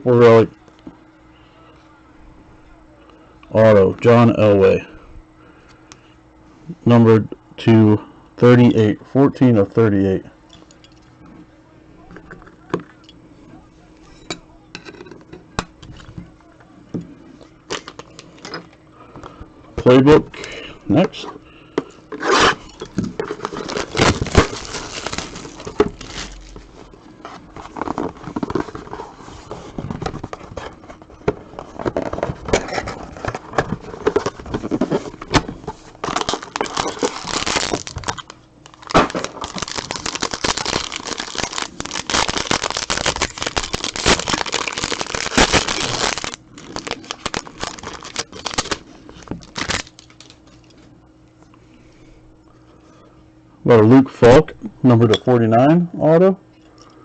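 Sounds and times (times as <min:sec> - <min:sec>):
plastic wrapping tearing and crinkling: 0:17.7 - 0:18.5, 0:22.2 - 0:50.6.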